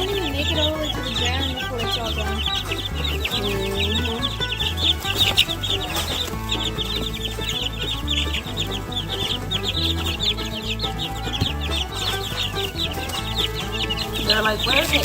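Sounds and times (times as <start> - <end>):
chicks peeping: 0.0 - 15.0.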